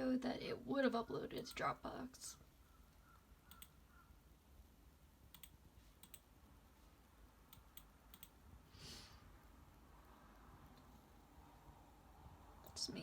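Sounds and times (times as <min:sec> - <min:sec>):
faint computer mouse clicks: 0:03.4 - 0:03.8, 0:05.3 - 0:06.3, 0:07.5 - 0:08.4.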